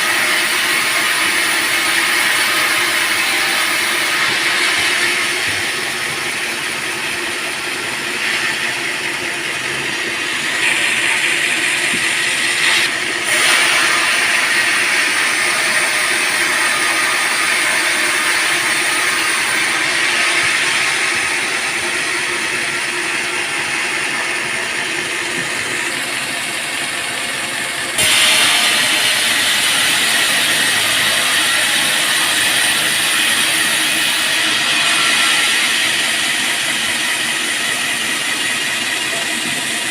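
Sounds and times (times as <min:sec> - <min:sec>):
band sawmill cutting log: 0:00.0 - 0:39.9.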